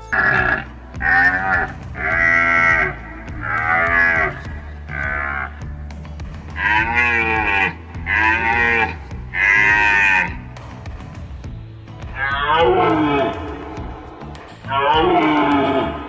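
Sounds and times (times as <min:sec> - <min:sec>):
animal lowing: 0:00.0 - 0:05.8, 0:06.5 - 0:10.6.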